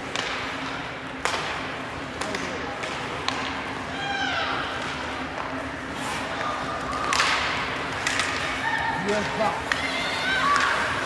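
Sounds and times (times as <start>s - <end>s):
puck and sticks hitting boards: 0.0s - 3.6s, 6.9s - 11.0s.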